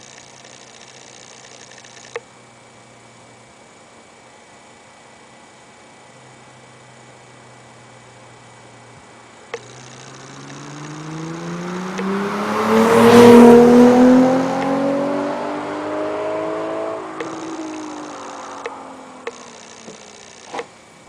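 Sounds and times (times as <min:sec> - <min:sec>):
short clicks: 0:09.5 - 0:11.0, 0:17.2 - 0:20.7
car engine accelerating: 0:09.6 - 0:20.2.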